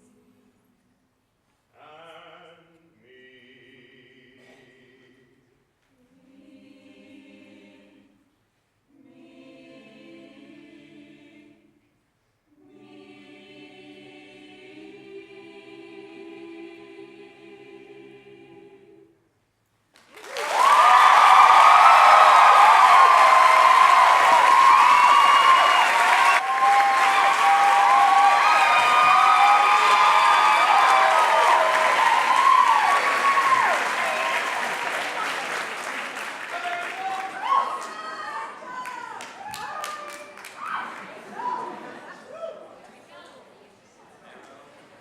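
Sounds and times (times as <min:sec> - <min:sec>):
a cappella group singing: 0:01.8 - 0:19.3
applause: 0:20.0 - 0:41.5.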